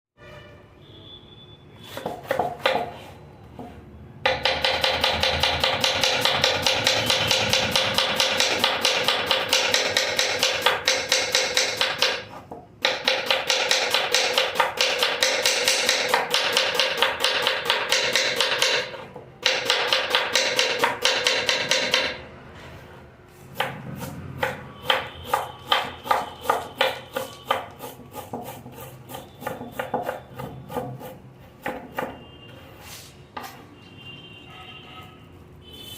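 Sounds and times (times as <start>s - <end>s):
knife chopping: 1.9s - 3.0s, 3.6s - 22.2s, 23.6s - 32.2s.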